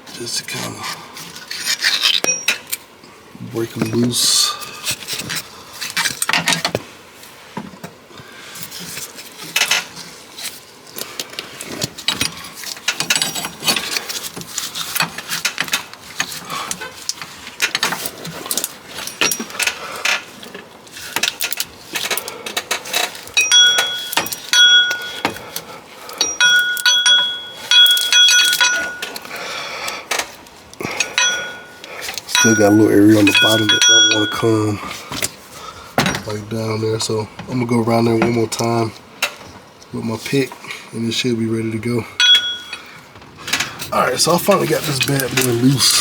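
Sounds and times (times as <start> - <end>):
ringing metal clinks: 2.2 - 2.8, 23.4 - 25.4, 26.1 - 29.3, 31.0 - 34.7, 42.2 - 43.0.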